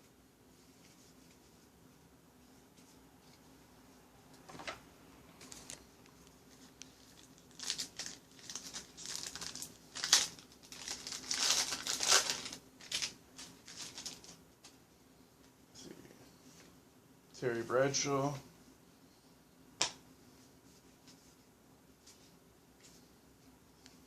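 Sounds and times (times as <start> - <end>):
wrapper crinkling and tearing: 7.0 - 14.4.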